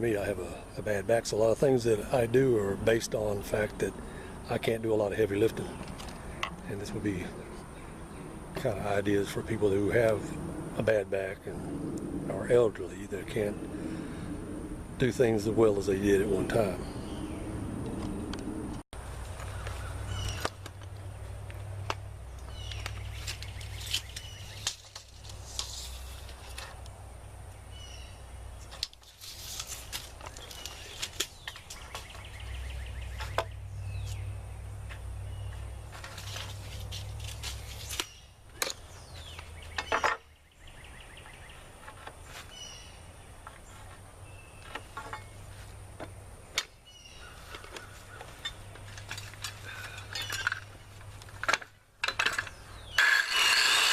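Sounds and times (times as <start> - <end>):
birds chirping: 0.0 - 53.9
low rumble: 9.9 - 15.0.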